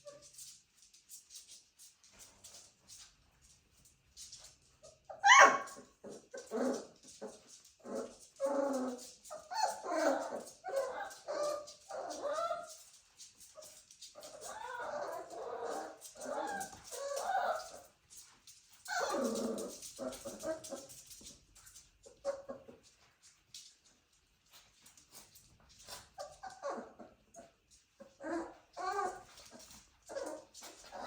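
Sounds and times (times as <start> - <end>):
puppies whimpering and yipping: 4.8 - 18.0, 18.7 - 21.2, 22.0 - 22.8, 25.8 - 31.0.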